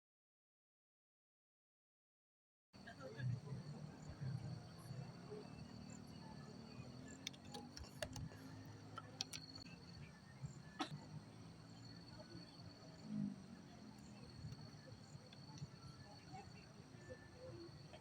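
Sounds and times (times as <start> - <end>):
distant voices murmuring: 2.8 - 18.0.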